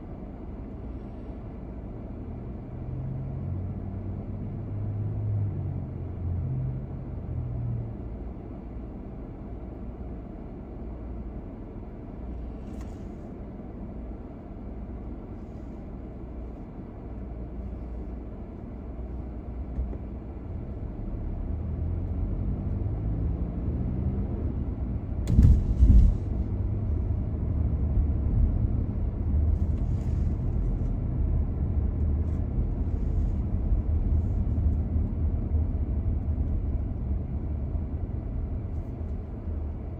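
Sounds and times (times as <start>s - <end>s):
car engine and tyre rumble: 0.0s - 39.9s
loud thumps: 25.3s - 26.4s.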